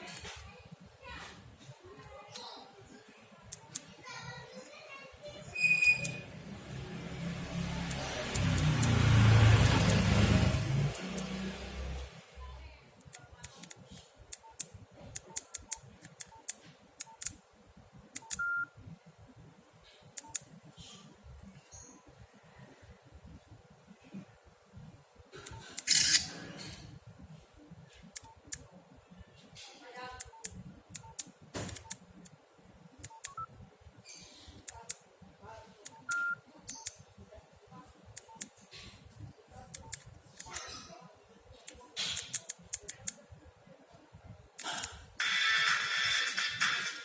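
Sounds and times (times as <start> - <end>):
phone key beeps: 5.6 - 6.2, 18.2 - 18.7, 33.1 - 33.5, 35.9 - 37.0
keypad beeps: 5.6 - 6.3, 14.4 - 17.3, 18.2 - 18.8, 20.2 - 20.4, 30.2 - 32.0, 33.0 - 33.5, 35.9 - 37.0, 38.2 - 38.6, 39.8 - 40.7.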